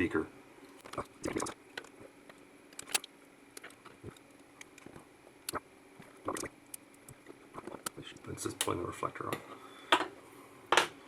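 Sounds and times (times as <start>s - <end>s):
small plastic parts clicking: 0.8s - 4.9s.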